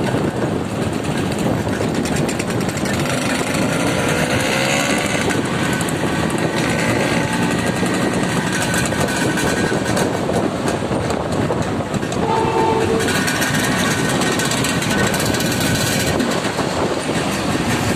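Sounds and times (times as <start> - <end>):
vehicle engine running loudly: 0.0 - 17.9
horn-like tone: 12.2 - 13.3.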